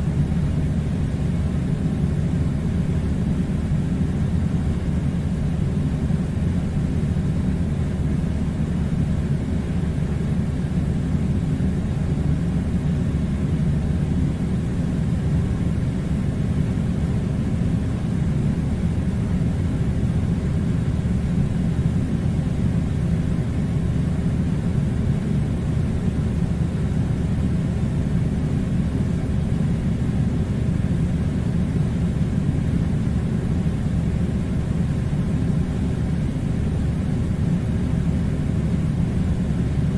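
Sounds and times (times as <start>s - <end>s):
air conditioner running: 0.0s - 39.9s.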